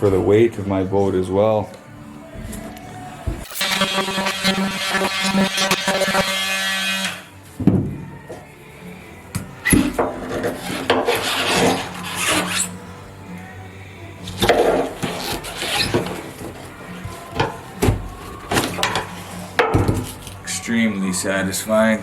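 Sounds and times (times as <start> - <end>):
foam scraping and tearing: 3.4 - 7.3, 9.7 - 12.7, 14.4 - 16.7.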